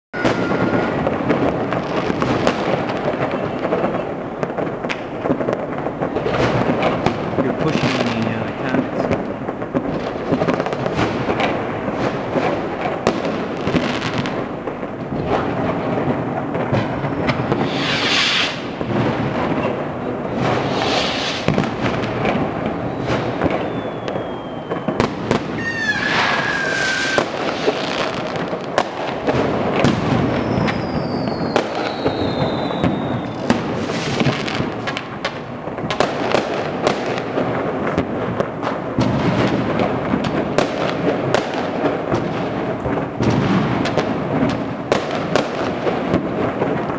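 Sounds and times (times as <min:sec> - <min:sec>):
fireworks bangs and crackles: 0:00.1 - 0:46.9
falling firework whistles: 0:00.2 - 0:02.6, 0:17.0 - 0:19.1, 0:20.3 - 0:22.0, 0:22.7 - 0:28.4, 0:29.3 - 0:34.7.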